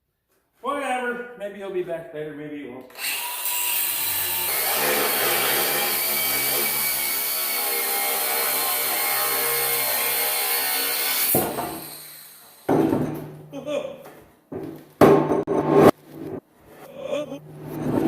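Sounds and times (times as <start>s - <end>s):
power tool on steel: 2.9s - 12.7s.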